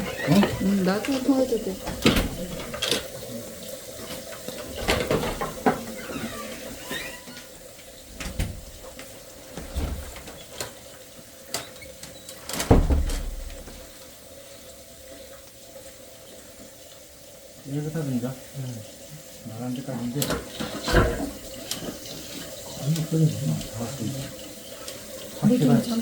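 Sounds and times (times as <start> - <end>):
water running into drain: 0.0 - 26.0
knocks and low thumps: 12.7 - 13.9.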